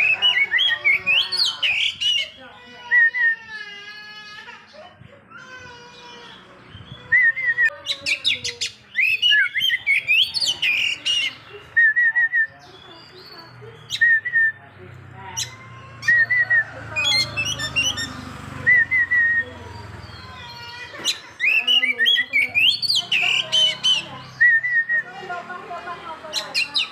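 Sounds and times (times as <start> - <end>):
bird singing whistled notes: 6.8 - 14.6, 17.5 - 20.2, 21.5 - 25.1.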